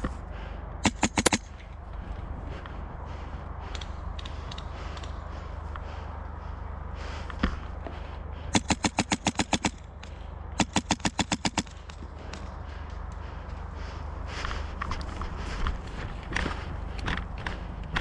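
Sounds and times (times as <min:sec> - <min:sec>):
airsoft gun shots: 0:00.8 - 0:01.5, 0:08.6 - 0:09.8, 0:10.6 - 0:11.8.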